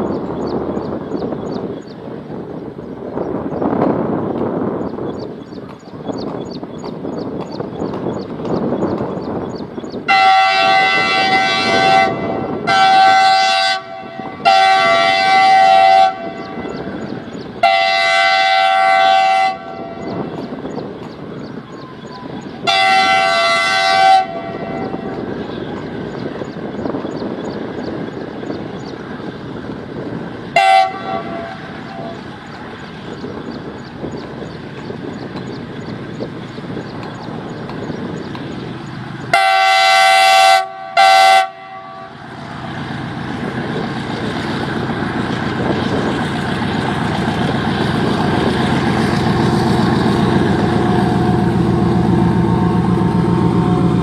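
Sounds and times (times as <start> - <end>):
rumble of moving train: 0.0 - 54.0
locomotive air horn blasts: 10.1 - 16.8, 17.6 - 20.2, 22.6 - 25.2, 30.5 - 32.2, 39.3 - 42.4
diesel engine drone: 34.8 - 54.0.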